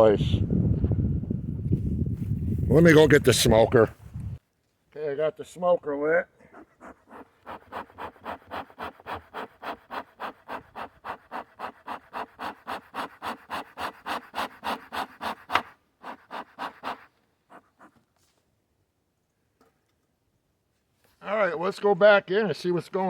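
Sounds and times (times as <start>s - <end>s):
bellows puffing air: 6.4s - 18.0s.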